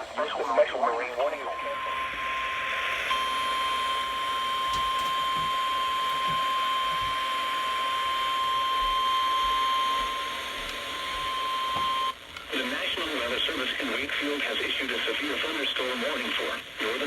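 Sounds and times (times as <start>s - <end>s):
radio static hiss: 0.0s - 17.0s
steady single-pitch alarm beep: 1.4s - 12.2s.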